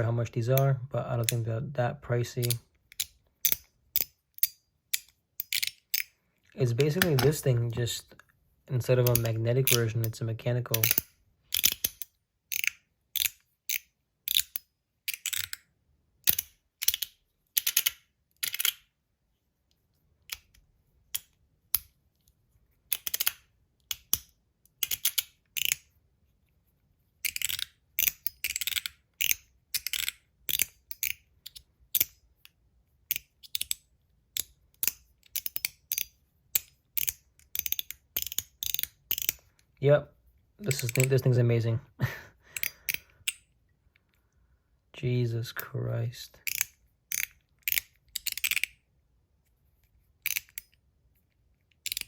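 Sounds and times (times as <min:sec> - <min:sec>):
metal slider fidget clicking: 0:24.8 - 0:25.8, 0:34.4 - 0:39.4, 0:46.4 - 0:48.8, 0:50.2 - 0:50.8.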